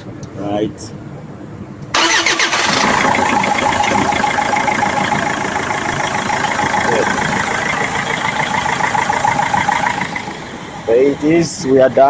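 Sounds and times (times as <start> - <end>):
diesel engine starting and idling: 1.9 - 12.0.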